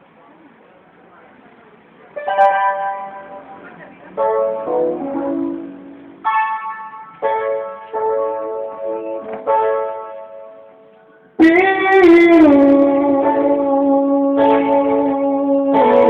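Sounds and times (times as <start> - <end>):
electric guitar melody: 2.2 - 16.0.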